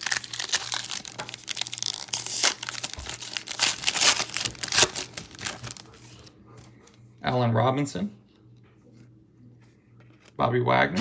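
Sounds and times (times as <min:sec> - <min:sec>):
cards rustling: 0:00.0 - 0:06.2
wrapper tearing and crinkling: 0:00.0 - 0:06.2.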